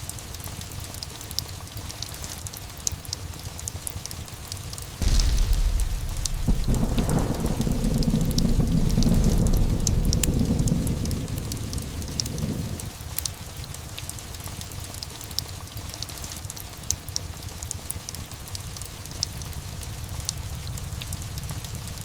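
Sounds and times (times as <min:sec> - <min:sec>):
steady rain: 0:00.0 - 0:22.0
thunder rolling: 0:05.0 - 0:13.0.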